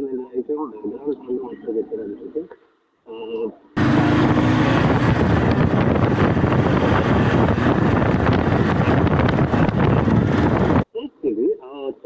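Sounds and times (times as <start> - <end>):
wind rush: 3.8 - 10.8
motorbike road noise: 3.8 - 10.9.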